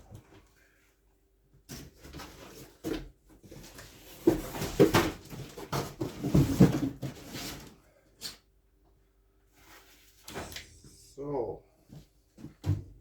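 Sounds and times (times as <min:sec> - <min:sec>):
cardboard rustling and scraping: 0:01.7 - 0:07.8.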